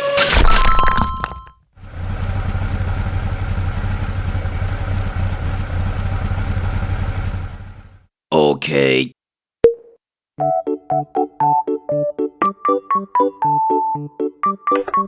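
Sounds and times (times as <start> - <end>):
heavy machine engine running: 1.8 - 8.0.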